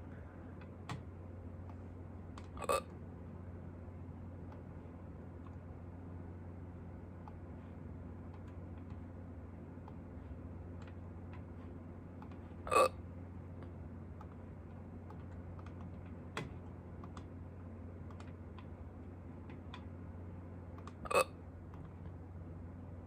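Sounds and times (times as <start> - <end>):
low steady hum: 0.0 - 23.0
person hiccuping: 2.6 - 2.9, 12.7 - 13.0, 21.0 - 21.4.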